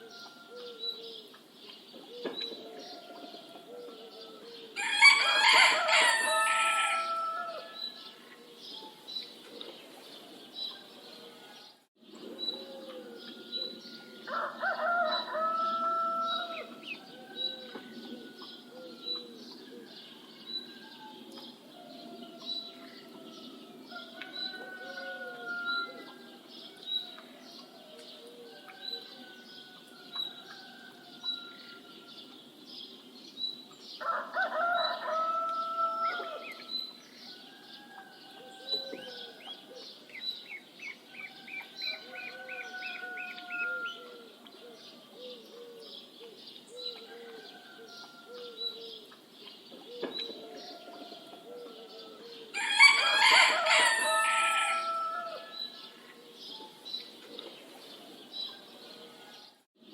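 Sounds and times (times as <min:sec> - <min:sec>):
birds chirping: 0:00.0 - 0:59.7
rooster crowing: 0:02.8 - 0:08.2, 0:12.7 - 0:20.2, 0:21.8 - 0:26.3, 0:34.0 - 0:36.6, 0:41.3 - 0:44.4, 0:50.6 - 0:56.0.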